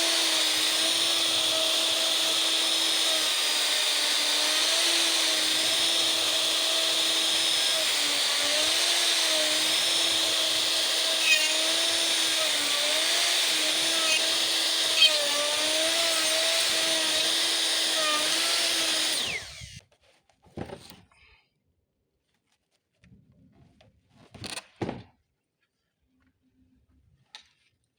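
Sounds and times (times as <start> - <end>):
router whining: 0.0 - 19.8.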